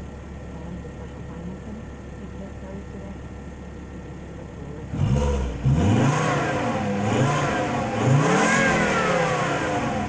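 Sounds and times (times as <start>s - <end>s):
car engine revving: 4.9s - 10.0s.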